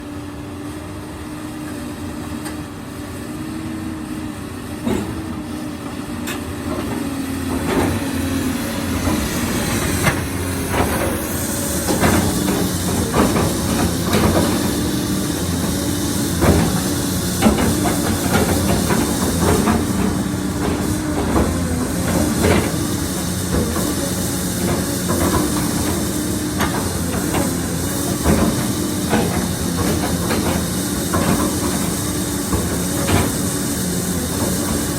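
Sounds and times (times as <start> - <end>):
diesel engine running: 0.5 - 34.9
machine knocking and clanking: 4.8 - 34.9
hydraulic hiss: 7.6 - 34.9.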